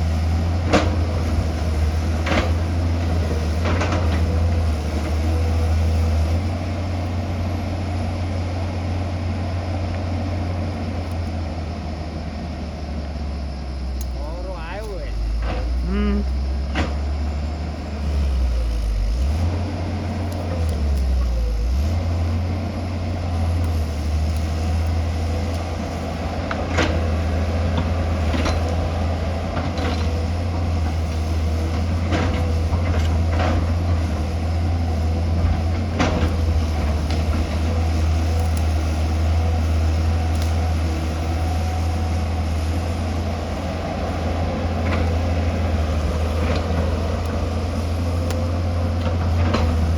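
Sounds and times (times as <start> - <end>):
excavator diesel engine droning: 0.0 - 49.9.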